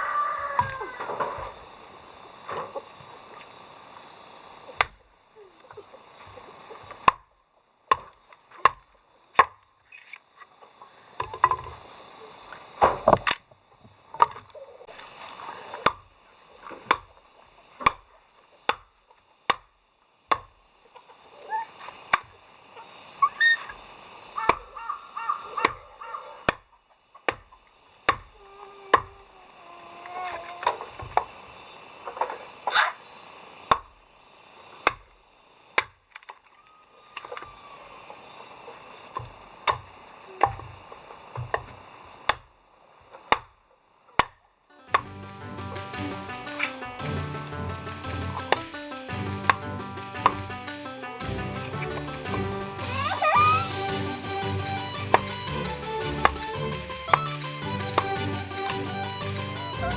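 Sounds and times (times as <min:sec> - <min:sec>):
axe chopping wood: 0:07.9 - 0:09.6, 0:16.8 - 0:17.1, 0:17.8 - 0:18.1, 0:18.7 - 0:18.9, 0:19.5 - 0:19.7, 0:20.3 - 0:20.5, 0:26.5 - 0:26.7, 0:27.3 - 0:28.4, 0:34.8 - 0:35.1, 0:39.2 - 0:40.6, 0:43.3 - 0:43.5.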